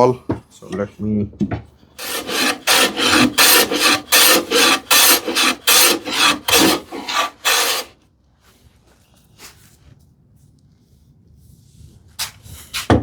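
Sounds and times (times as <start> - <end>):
abrading strokes on plywood: 2.0 - 7.9.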